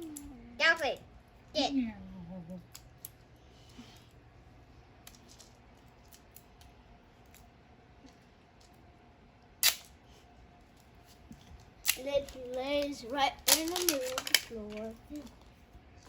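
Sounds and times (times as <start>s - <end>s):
plastic toy pieces clicking: 11.8s - 15.3s.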